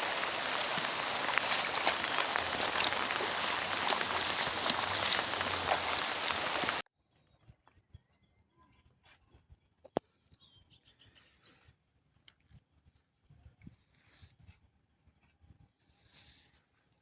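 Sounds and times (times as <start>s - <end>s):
heavy rain hissing: 0.0s - 6.8s.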